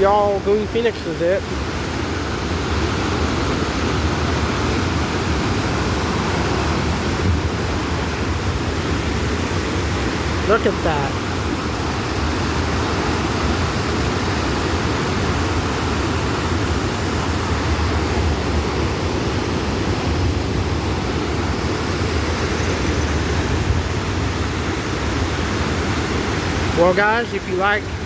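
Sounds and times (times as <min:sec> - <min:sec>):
small waterfall rushing: 0:00.0 - 0:28.0.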